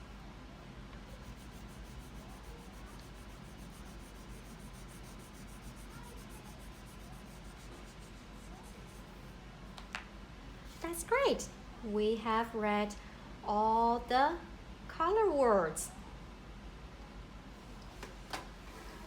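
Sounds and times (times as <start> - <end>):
steady low hum: 0.0 - 17.8
crayon rubbing on paper: 1.0 - 9.3.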